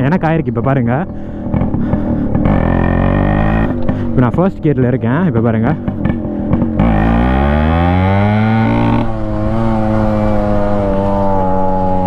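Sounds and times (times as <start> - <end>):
motorcycle engine pulling away: 1.6 - 4.1, 5.8 - 12.0.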